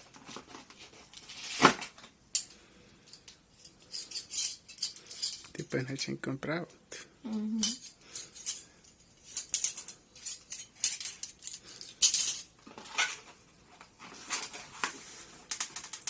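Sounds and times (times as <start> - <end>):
metal cutlery clinking: 2.4 - 5.6, 7.6 - 13.2.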